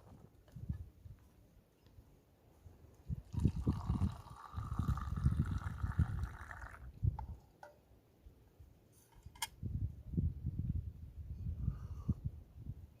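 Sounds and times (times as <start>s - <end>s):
water pouring into a container: 3.3s - 6.9s.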